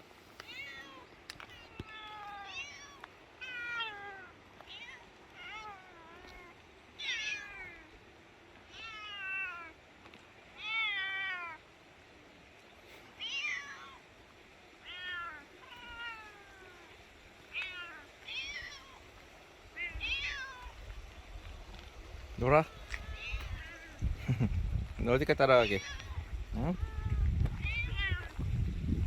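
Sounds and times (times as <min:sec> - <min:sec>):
cat meowing: 0:00.4 - 0:07.9, 0:08.7 - 0:09.7, 0:10.6 - 0:11.6, 0:13.2 - 0:14.0, 0:14.8 - 0:19.0, 0:19.8 - 0:20.8, 0:22.7 - 0:24.0, 0:25.6 - 0:28.4.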